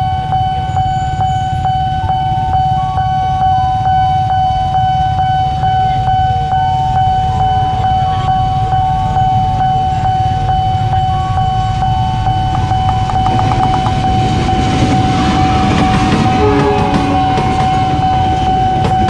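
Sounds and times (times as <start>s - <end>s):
level-crossing warning bell: 0.0s - 19.0s
passing train rumble: 7.3s - 19.0s.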